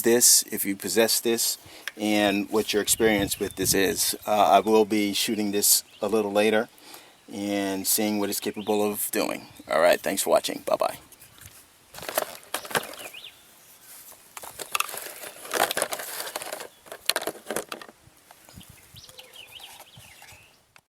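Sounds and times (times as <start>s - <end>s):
rustling and clicking handling noises: 11.0s - 20.9s.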